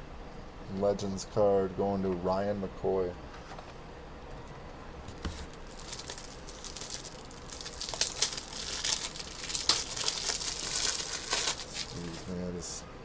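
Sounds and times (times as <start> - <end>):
plastic packaging crinkling: 5.1 - 12.4.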